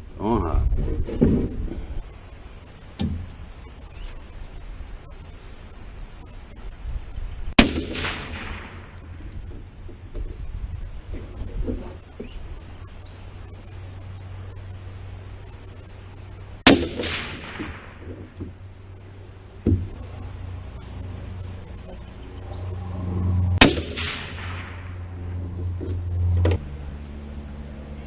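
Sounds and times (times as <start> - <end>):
rifle shots echoing: 7.6 - 9.1, 16.7 - 18.0, 23.6 - 25.0.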